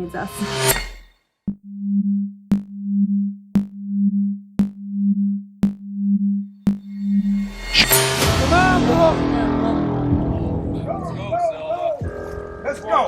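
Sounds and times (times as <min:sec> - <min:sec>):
sharp ticks: 0:03.6 - 0:03.8, 0:04.6 - 0:04.8, 0:06.7 - 0:06.9.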